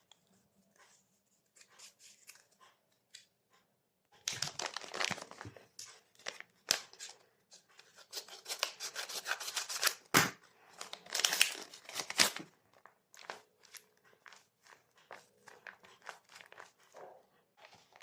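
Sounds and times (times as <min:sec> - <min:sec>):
plastic packaging crinkling: 0:04.2 - 0:07.2, 0:10.7 - 0:16.8.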